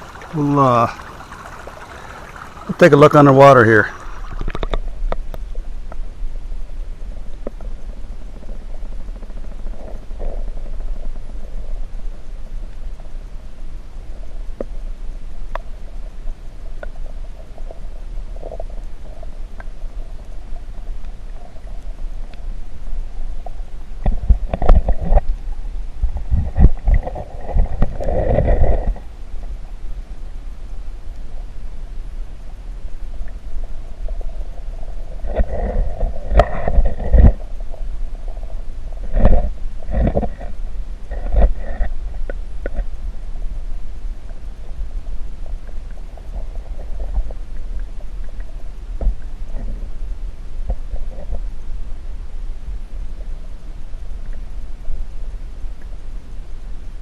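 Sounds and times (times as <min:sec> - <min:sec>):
underwater creek rumble: 0:00.0 - 0:57.0
underwater knocks: 0:04.0 - 0:05.2
faint ticks: 0:15.4 - 0:22.5, 0:31.0 - 0:31.4, 0:44.3 - 0:51.5, 0:54.2 - 0:56.4.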